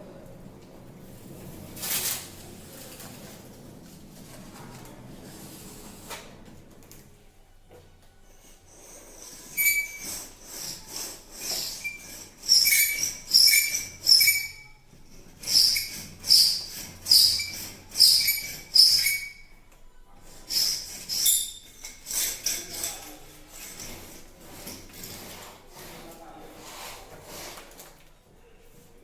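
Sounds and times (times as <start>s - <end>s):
spatula squeak: 8.8s - 14.8s, 15.4s - 19.5s, 20.5s - 23.0s
spatula scraping plaster: 22.1s - 27.9s.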